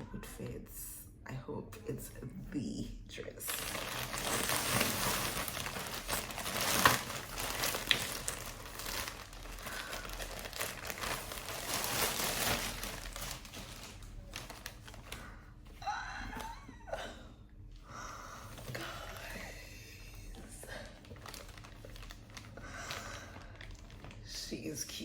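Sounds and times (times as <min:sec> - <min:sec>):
plastic packaging crinkling: 0:03.4 - 0:15.4, 0:20.4 - 0:24.5
plastic packaging tearing: 0:03.5 - 0:15.2, 0:21.0 - 0:24.3.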